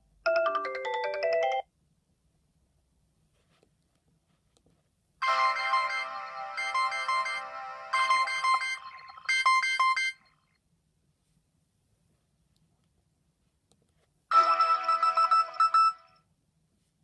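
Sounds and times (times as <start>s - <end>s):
mobile phone ringtone melody: 0.3s - 1.7s, 5.2s - 10.2s, 14.3s - 16.2s.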